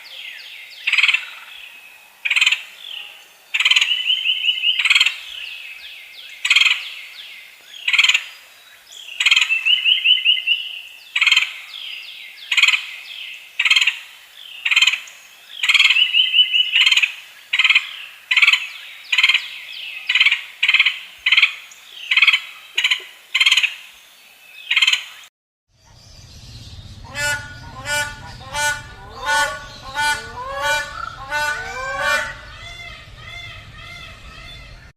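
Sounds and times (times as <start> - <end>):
fowl calling: 27.0 - 34.9
fowl rattling chatter: 27.0 - 34.9.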